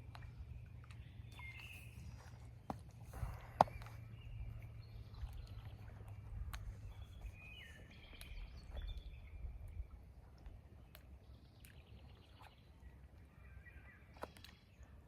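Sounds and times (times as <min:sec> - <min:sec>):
small birds chirping: 0:00.0 - 0:09.9
low rumble: 0:00.0 - 0:10.5.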